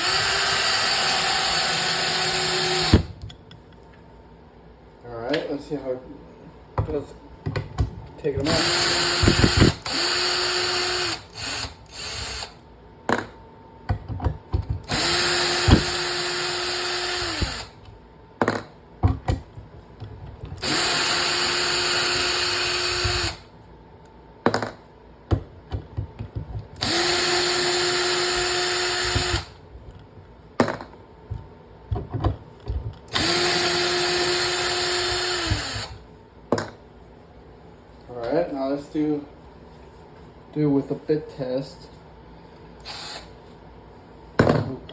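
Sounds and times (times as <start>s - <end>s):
cordless drill motor whine: 0.0s - 3.2s, 8.4s - 12.6s, 14.9s - 17.8s, 20.6s - 23.5s, 26.8s - 29.5s, 33.1s - 36.0s, 42.8s - 43.3s.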